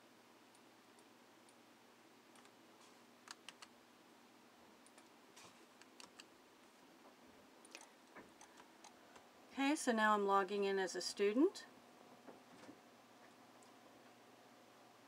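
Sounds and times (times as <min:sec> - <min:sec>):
computer keyboard keystrokes: 0:03.2 - 0:03.7, 0:05.8 - 0:06.3.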